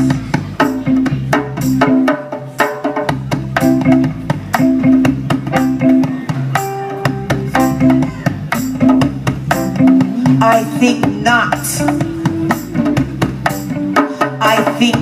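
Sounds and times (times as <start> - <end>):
bass line: 0.0 - 2.2, 3.1 - 15.0
percussion steady beat: 0.0 - 15.0
plucked guitar chords: 3.4 - 14.2.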